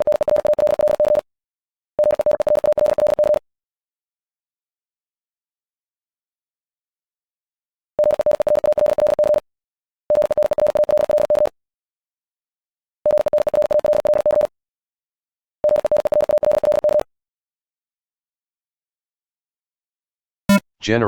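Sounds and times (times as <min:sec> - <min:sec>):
morse code beeps: 0:00.0 - 0:01.2, 0:02.0 - 0:03.4, 0:08.0 - 0:09.4, 0:10.1 - 0:11.5, 0:13.1 - 0:14.5, 0:15.6 - 0:17.1.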